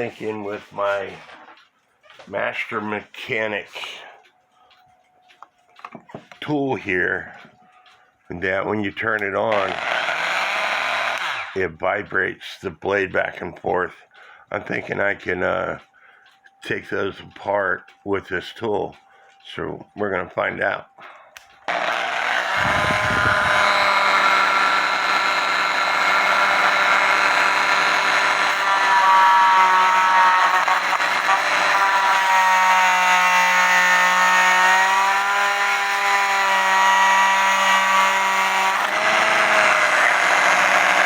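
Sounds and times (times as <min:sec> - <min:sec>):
oscillating multi-tool whine: 0:09.1 - 0:11.6, 0:14.7 - 0:41.0.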